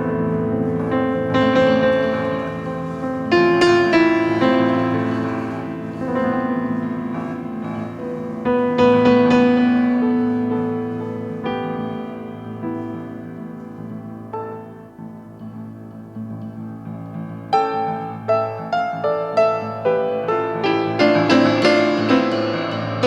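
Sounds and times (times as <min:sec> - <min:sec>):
piano playing slow chords: 0:00.0 - 0:23.0.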